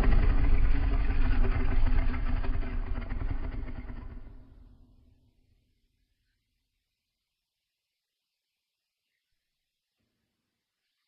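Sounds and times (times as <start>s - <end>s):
deep rough monster roar: 0.0s - 4.9s.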